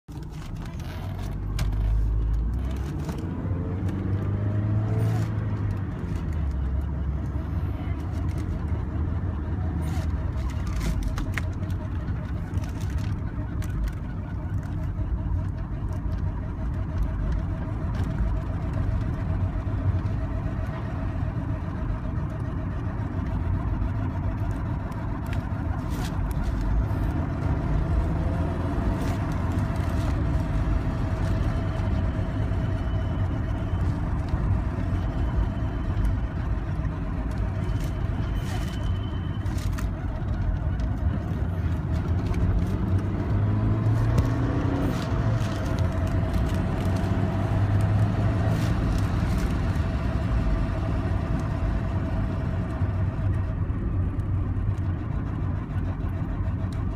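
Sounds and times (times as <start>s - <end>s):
road and engine rumble: 0.0s - 56.9s.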